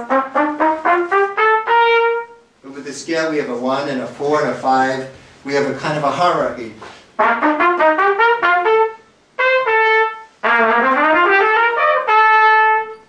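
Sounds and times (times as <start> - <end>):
trumpet playing scale runs: 0.0 - 2.5, 7.2 - 13.0.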